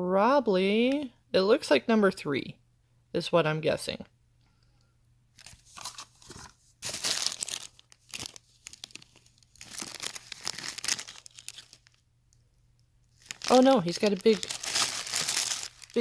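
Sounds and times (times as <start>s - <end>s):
wrapper crinkling and tearing: 5.4s - 12.0s, 13.1s - 16.0s.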